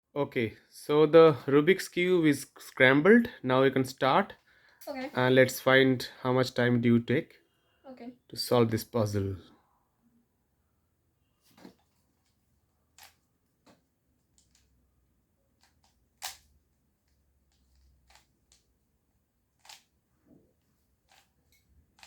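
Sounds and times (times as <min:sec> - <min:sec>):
puzzle cube clicking: 0:15.5 - 0:18.7, 0:19.6 - 0:20.0, 0:21.0 - 0:22.0.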